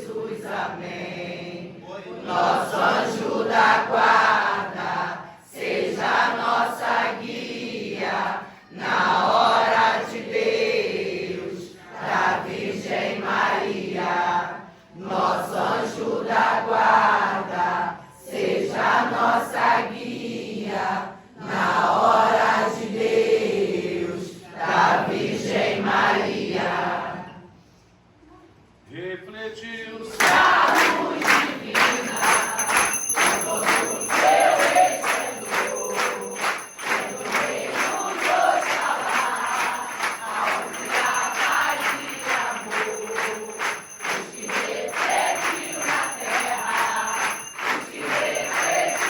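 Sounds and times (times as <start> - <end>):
group of voices chanting: 30.1 - 49.0.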